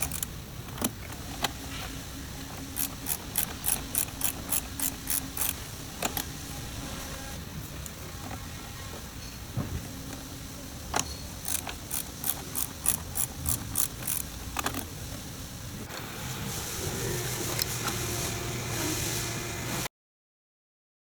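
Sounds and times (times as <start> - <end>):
sharp mechanical clicks: 0.0 - 1.6, 2.5 - 6.4, 10.9 - 14.9.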